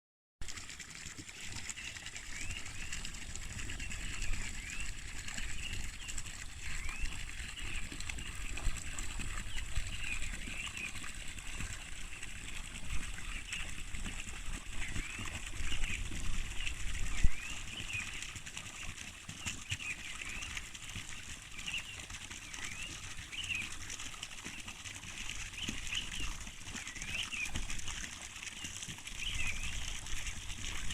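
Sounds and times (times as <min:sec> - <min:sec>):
birds chirping: 0:03.8 - 0:11.1.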